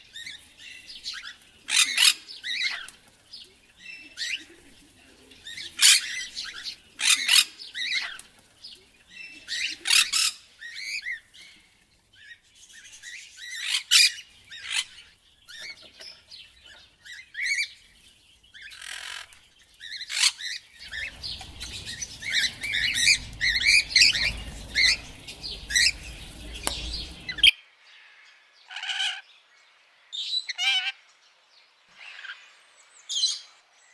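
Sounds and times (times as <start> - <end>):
parrot squawking and chattering: 20.1 - 27.5
low rumble: 20.8 - 27.5.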